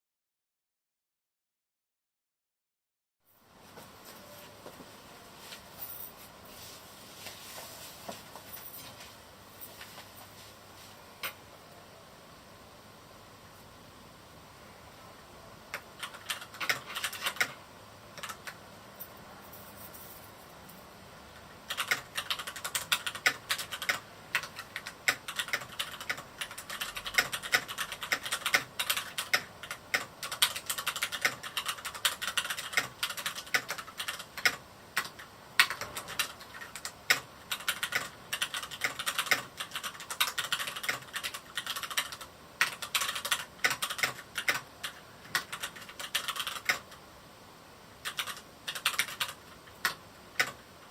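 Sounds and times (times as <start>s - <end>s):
mechanical keyboard typing: 15.7s - 18.6s, 21.6s - 47.0s, 48.0s - 50.9s.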